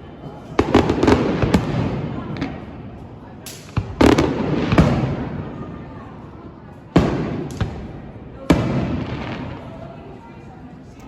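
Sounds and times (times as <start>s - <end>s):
fireworks booming with echo: 0.4s - 6.0s, 6.8s - 9.9s.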